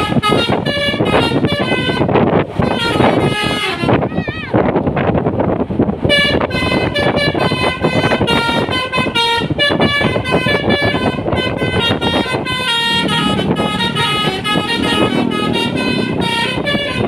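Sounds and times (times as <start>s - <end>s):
musical bus horn tune: 0.0s - 4.1s, 6.0s - 17.0s
bus engine: 0.0s - 17.0s
road noise: 0.0s - 17.0s.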